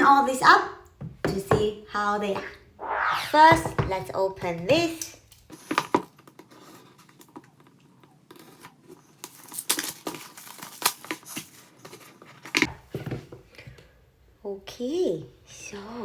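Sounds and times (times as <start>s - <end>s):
packaging rustling and crinkling: 5.5s - 12.8s
cardboard box seal tearing: 9.2s - 12.1s.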